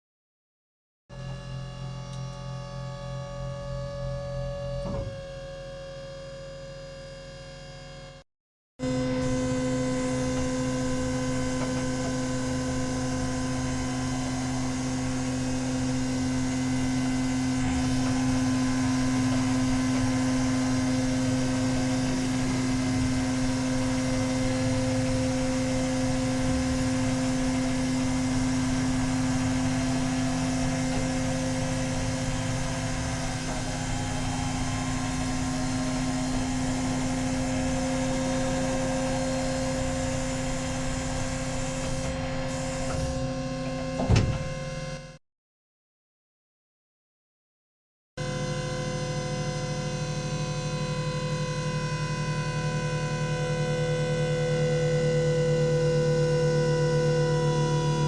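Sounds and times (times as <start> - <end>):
turret drive electric hum: 1.1 - 8.2, 8.8 - 45.2, 48.2 - 58.0.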